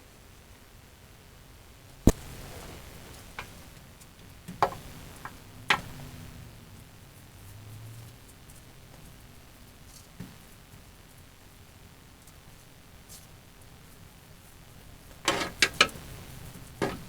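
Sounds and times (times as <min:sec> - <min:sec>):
sharp knocks and clicks: 0:04.5 - 0:06.0.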